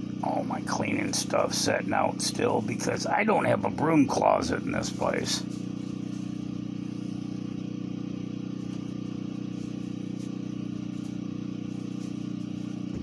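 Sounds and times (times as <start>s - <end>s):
motor humming: 0.0s - 13.0s.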